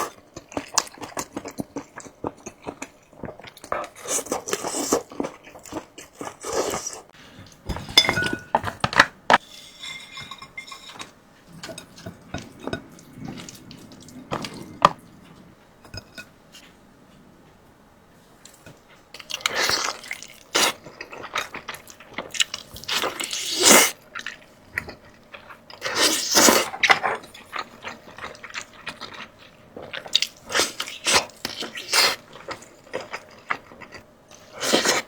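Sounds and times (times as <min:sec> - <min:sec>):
utensils clinking against bowl: 0:07.7 - 0:13.6
wet eating of noodles: 0:10.9 - 0:16.3.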